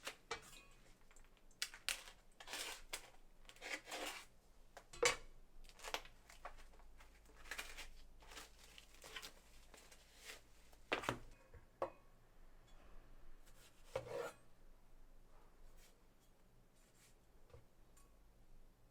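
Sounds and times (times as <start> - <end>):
rustling and scraping: 5.8 - 11.3, 13.4 - 14.4.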